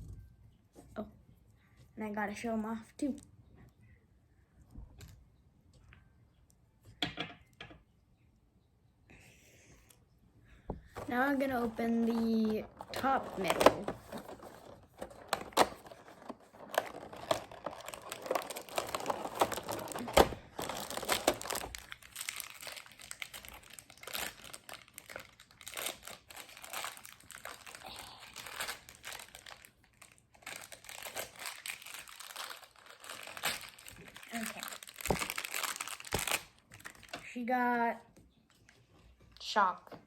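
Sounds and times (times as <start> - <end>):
packaging crinkling and tearing: 11.0 - 37.2.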